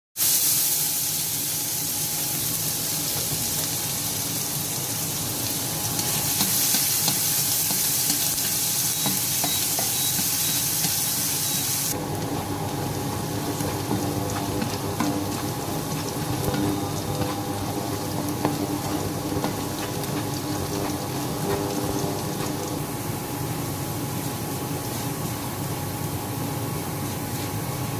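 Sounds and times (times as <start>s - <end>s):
food sizzling in oil: 0.2s - 27.9s.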